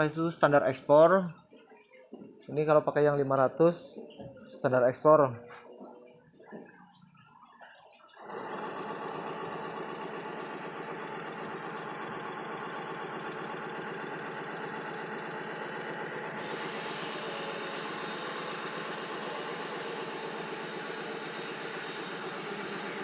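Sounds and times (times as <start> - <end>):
knitting machine chatter: 8.2 - 23.0.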